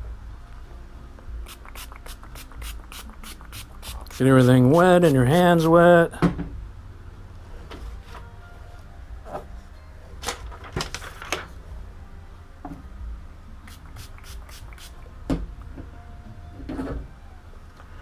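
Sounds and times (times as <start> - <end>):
spray bottle squirts: 1.4 - 5.7, 13.7 - 15.0.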